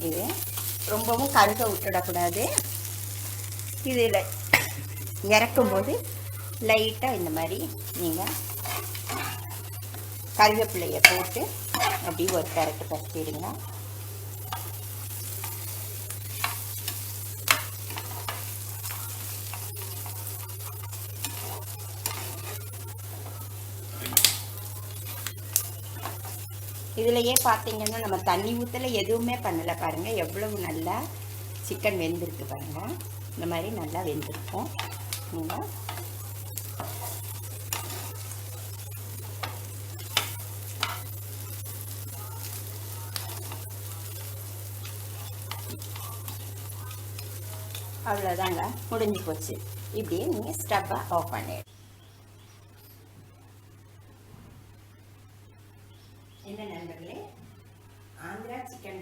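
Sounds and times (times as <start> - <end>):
food sizzling in hot oil: 0.0 - 52.1
steady low hum: 0.0 - 59.0
spoon scraping pan: 0.3 - 13.8, 14.4 - 28.8, 31.8 - 49.7.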